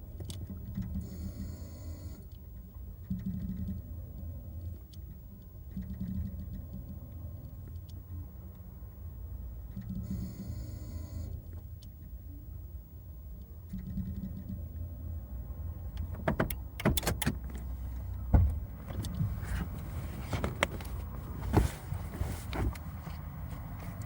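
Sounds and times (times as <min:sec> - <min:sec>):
car engine rumble: 0:11.4 - 0:24.0
sharp clicks and knocks: 0:16.0 - 0:17.7, 0:18.3 - 0:23.2.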